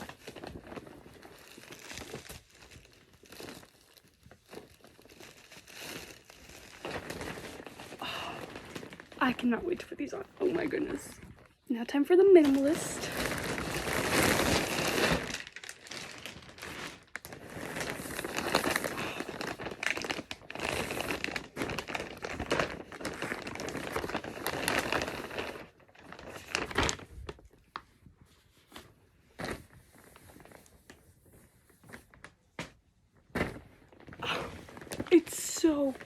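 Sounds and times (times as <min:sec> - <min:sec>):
packaging tearing: 0:00.0 - 0:09.4, 0:12.4 - 0:27.5
packaging crinkling and rustling: 0:00.0 - 0:36.0.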